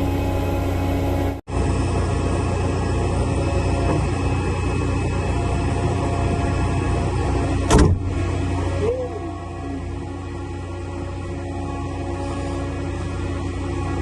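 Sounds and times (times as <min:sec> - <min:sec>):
aircraft engine hum: 0:00.0 - 0:14.0
loud sharp bang: 0:07.7 - 0:08.1.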